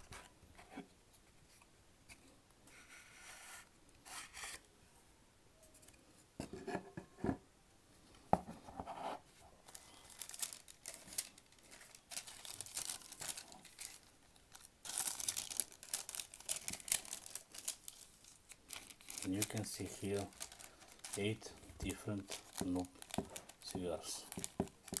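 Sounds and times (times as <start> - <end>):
packaging tearing and crinkling: 9.7 - 25.0.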